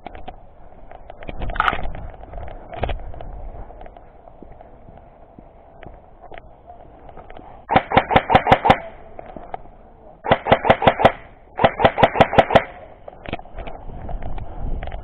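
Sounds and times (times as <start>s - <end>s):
airsoft gun bursts: 7.7s - 9.0s, 10.2s - 13.0s.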